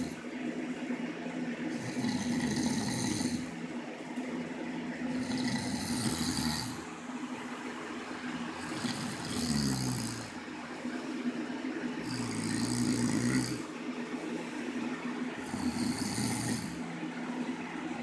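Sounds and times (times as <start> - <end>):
cat snoring: 1.7 - 3.5, 5.1 - 6.9, 8.6 - 10.4, 12.0 - 13.6, 15.4 - 16.8.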